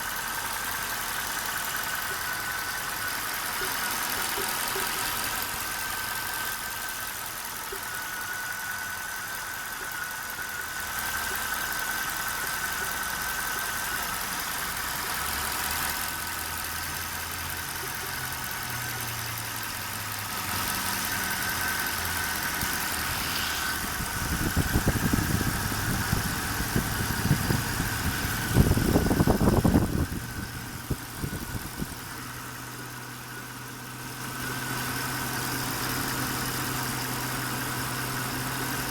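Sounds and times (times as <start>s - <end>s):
car engine idling: 0.0s - 38.9s
engine popping and stumbling: 0.0s - 38.9s
high whine: 21.8s - 32.0s.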